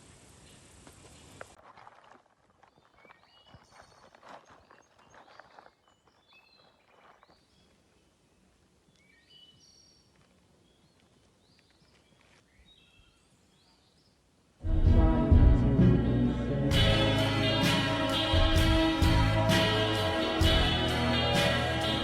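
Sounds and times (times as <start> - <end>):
faint outdoor ambience: 0.0 - 22.0
soft rustling: 9.9 - 13.4
loud music: 14.7 - 22.0.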